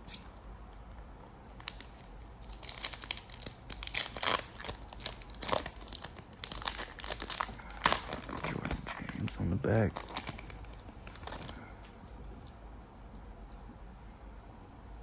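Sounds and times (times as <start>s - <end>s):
wrapper crinkling and tearing: 1.5s - 12.0s.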